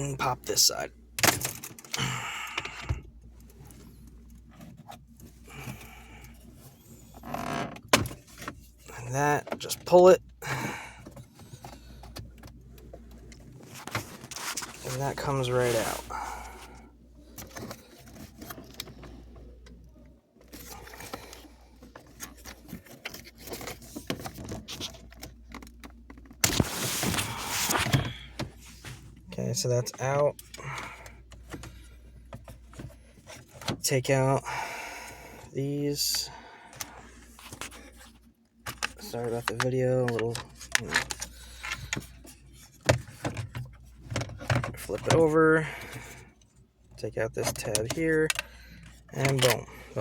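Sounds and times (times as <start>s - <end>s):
plastic scraping and rubbing: 11.4s - 16.5s, 20.4s - 29.2s
rustling scrape: 13.6s - 16.1s, 26.5s - 28.0s.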